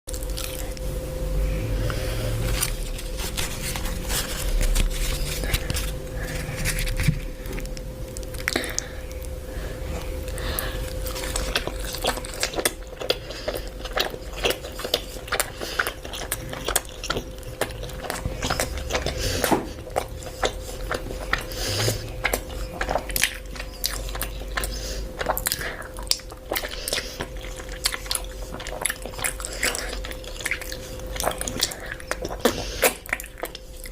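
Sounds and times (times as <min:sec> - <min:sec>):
biting and chewing: 0:00.1 - 0:00.9, 0:01.9 - 0:33.9
crisp crunches: 0:02.4 - 0:09.4.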